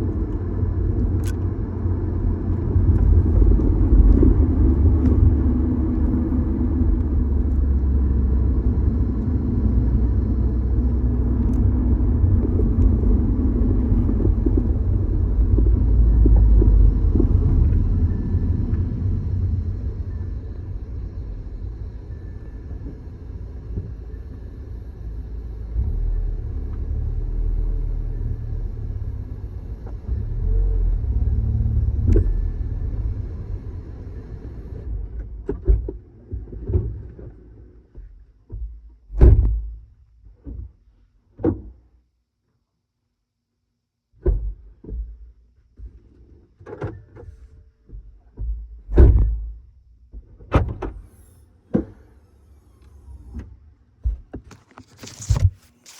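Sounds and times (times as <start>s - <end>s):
road and engine rumble: 0.0s - 39.7s, 46.6s - 55.9s
click: 1.2s - 1.5s
thumps and clunks: 44.2s - 52.1s.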